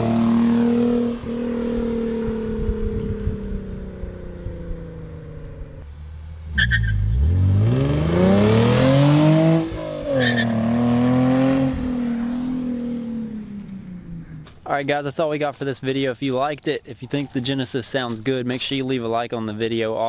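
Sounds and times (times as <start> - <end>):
car engine accelerating: 0.0 - 14.6.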